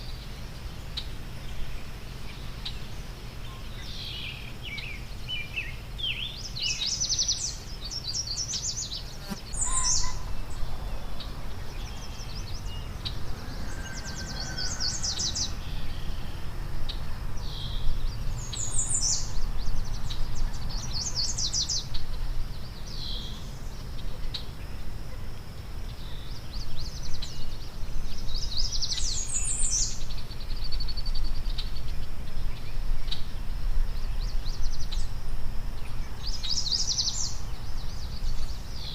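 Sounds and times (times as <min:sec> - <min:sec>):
songbirds singing trilled phrases: 0:00.0 - 0:24.6, 0:25.9 - 0:38.9.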